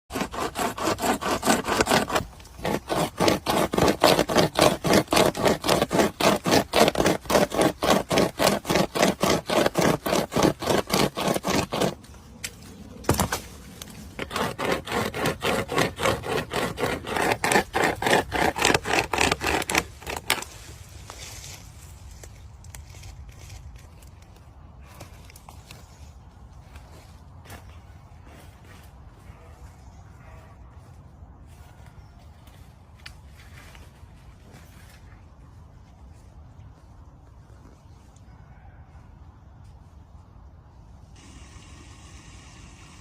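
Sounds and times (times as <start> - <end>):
hand saw rasping through wood: 0.1 - 12.0, 14.2 - 20.5.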